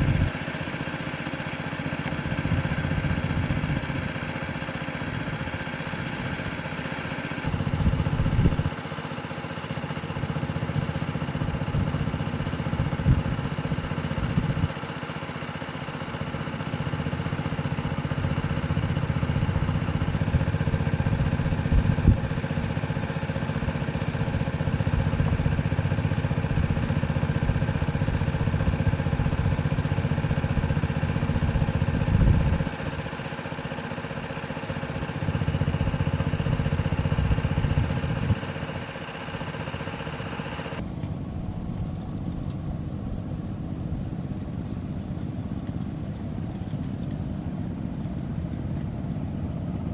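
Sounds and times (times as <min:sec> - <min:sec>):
tractor diesel engine running: 0:00.0 - 0:49.9.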